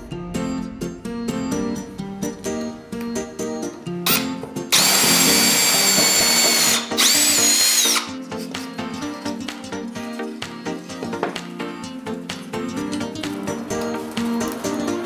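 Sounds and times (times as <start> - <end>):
plucked-string background music: 0.0 - 15.0
power drill whining: 4.1 - 8.1.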